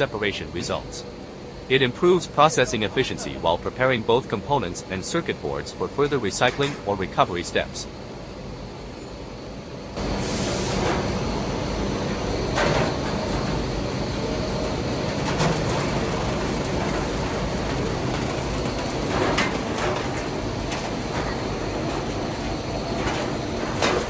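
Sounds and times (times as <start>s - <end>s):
machine mechanical rumble: 0.0s - 24.0s
sharp clanks and rattles: 6.1s - 7.0s, 10.8s - 24.0s.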